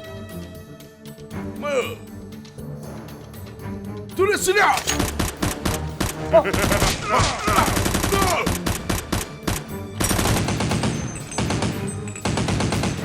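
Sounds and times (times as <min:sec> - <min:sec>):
background music: 0:00.0 - 0:13.0
machine-gun fire: 0:05.0 - 0:13.0.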